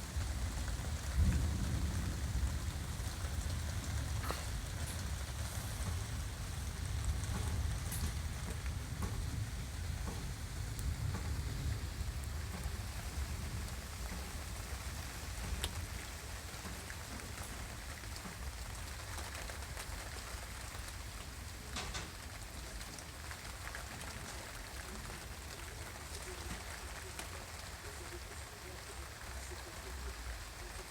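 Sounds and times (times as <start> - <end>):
low thunder rumble: 0.0 - 16.1
heavy rain falling: 0.0 - 30.9.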